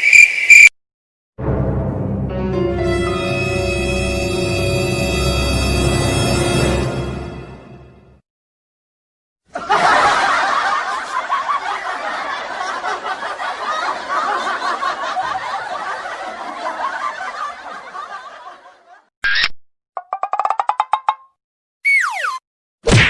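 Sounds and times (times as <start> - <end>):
crowd laughing: 9.5 - 19.1.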